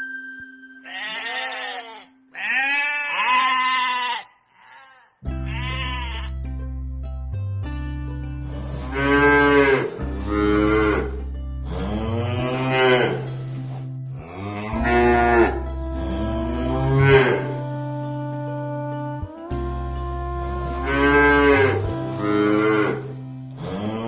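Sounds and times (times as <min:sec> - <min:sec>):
background music with low tones: 0:00.0 - 0:03.6, 0:05.2 - 0:24.0
cat meowing: 0:05.5 - 0:06.3.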